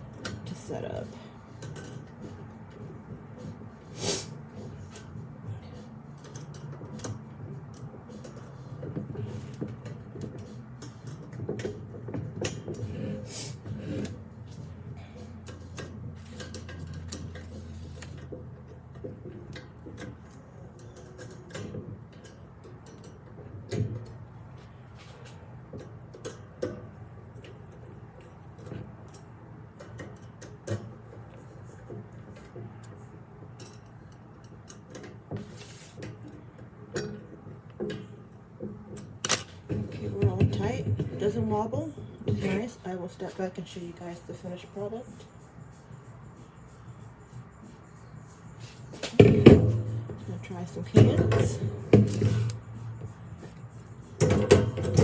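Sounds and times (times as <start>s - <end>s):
metal frame clinks and knocks: 4.6s - 24.3s, 33.5s - 42.6s, 48.9s - 55.0s.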